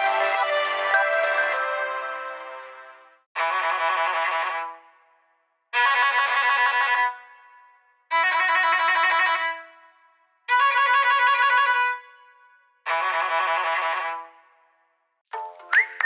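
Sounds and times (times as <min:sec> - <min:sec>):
phone ringtone melody: 0:00.0 - 0:02.1.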